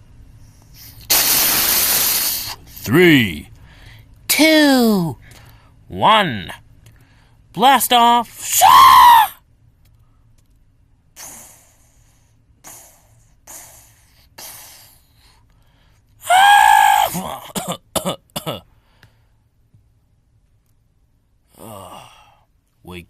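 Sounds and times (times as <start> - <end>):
loud strained cry: 8.5 - 9.4, 16.2 - 17.6
person coughing: 17.0 - 18.7.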